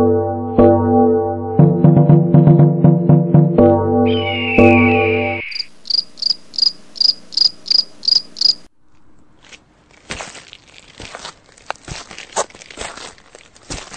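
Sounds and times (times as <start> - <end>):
music: 0.0 - 5.4
insect chirping: 4.1 - 8.7
crunching rustles: 7.1 - 13.9.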